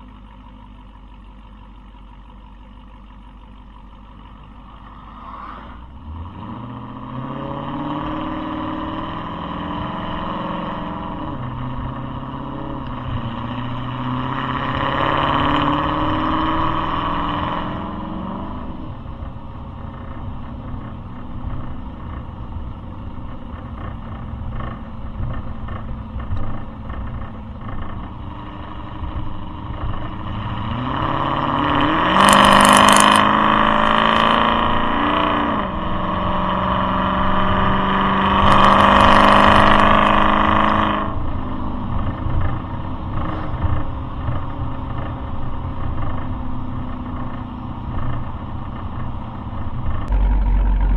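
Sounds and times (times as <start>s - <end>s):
engine revving: 4.3s - 18.9s, 23.7s - 41.4s, 49.9s - 50.9s.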